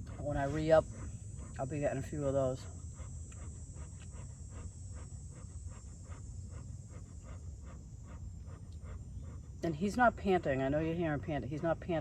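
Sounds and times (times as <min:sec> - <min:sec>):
dog panting: 0:00.0 - 0:12.0.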